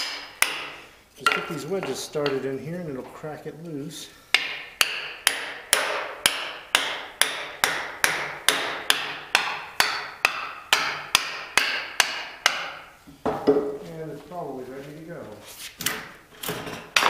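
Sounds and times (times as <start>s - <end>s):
hammer striking metal wedges: 0.0s - 2.4s, 4.3s - 12.8s.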